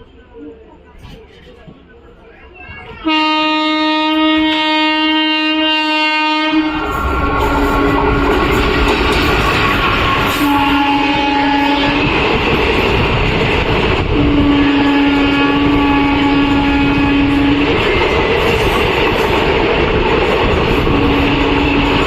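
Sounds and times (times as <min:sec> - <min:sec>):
train rumbling: 0:00.0 - 0:22.0
locomotive horn blasts: 0:03.0 - 0:08.3, 0:09.9 - 0:12.1, 0:14.2 - 0:17.8, 0:21.2 - 0:22.0.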